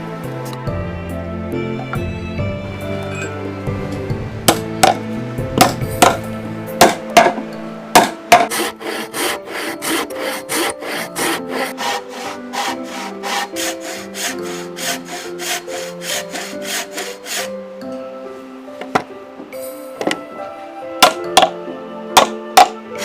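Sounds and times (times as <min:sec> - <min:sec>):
background music: 0:00.0 - 0:23.0
sharp knocks on wood: 0:04.5 - 0:05.0, 0:05.6 - 0:08.5, 0:22.2 - 0:22.8
hand tool stroking wood: 0:08.0 - 0:17.5.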